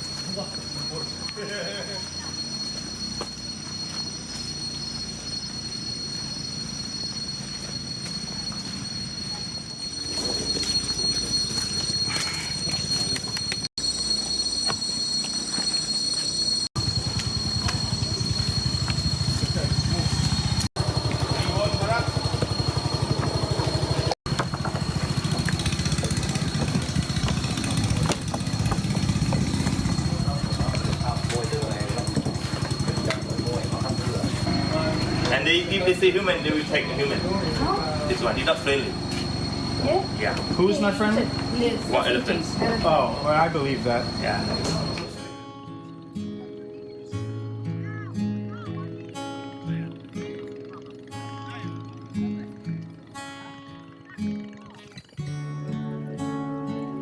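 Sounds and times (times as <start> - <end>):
insect chorus drone: 0.0 - 47.5
engine running with low throb: 16.8 - 45.5.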